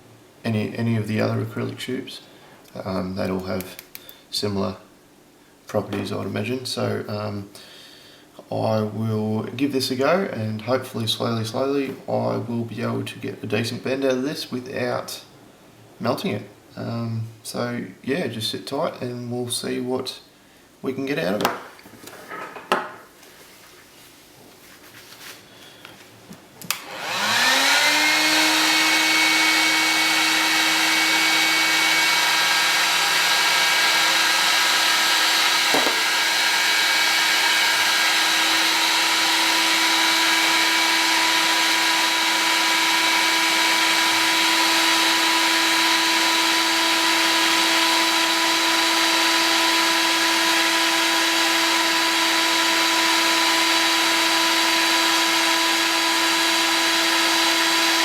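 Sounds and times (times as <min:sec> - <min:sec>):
heat gun fan whine: 0:26.6 - 0:58.0.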